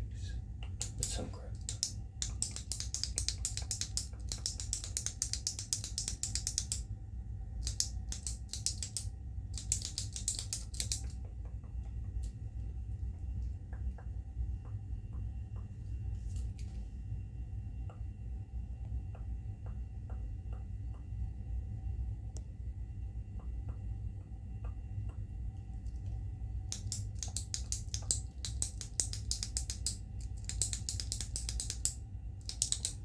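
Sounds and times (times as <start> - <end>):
steady low hum: 0.0 - 33.0
pen clicking: 1.7 - 6.8, 7.6 - 11.1, 26.7 - 33.0.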